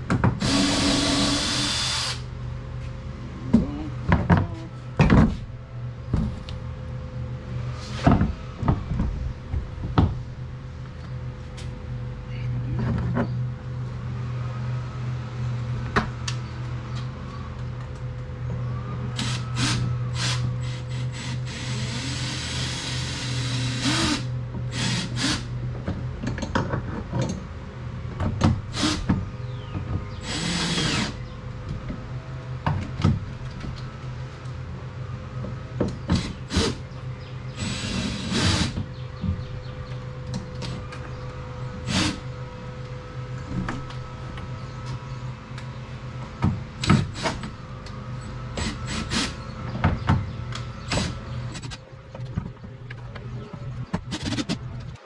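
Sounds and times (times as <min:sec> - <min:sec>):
steady low hum: 0:00.0 - 0:55.0
cordless power drill running: 0:00.4 - 0:02.3, 0:19.2 - 0:25.5, 0:30.2 - 0:31.2, 0:37.6 - 0:38.8.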